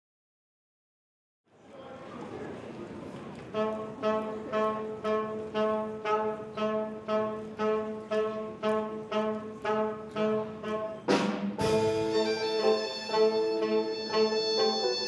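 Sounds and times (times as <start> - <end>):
pulsing single-note instrumental music: 11.6 - 15.0.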